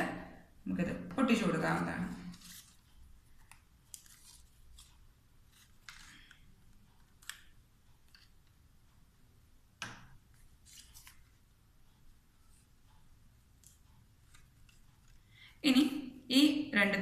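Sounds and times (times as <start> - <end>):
paper rustling and clicking: 2.1 - 8.5, 10.3 - 11.4.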